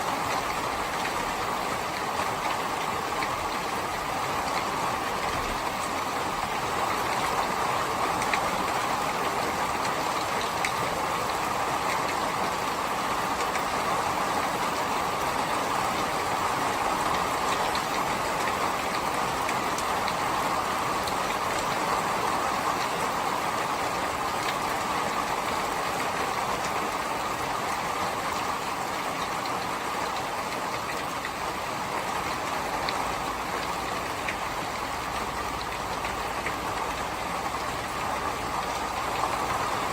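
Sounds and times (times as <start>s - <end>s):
steady rain hiss: 0.0s - 39.9s
raindrop ticks: 0.3s - 6.1s, 7.0s - 8.9s, 29.2s - 39.9s.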